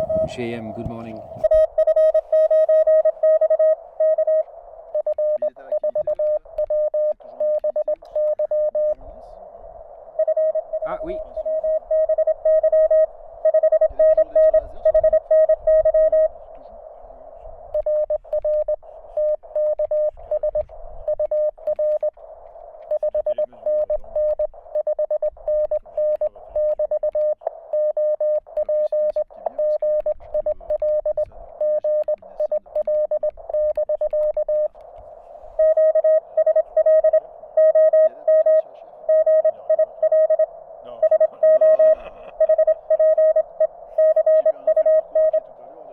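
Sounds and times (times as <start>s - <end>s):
morse code tones: 0.0s - 4.4s, 10.1s - 16.4s, 22.9s - 34.8s, 35.4s - 45.5s.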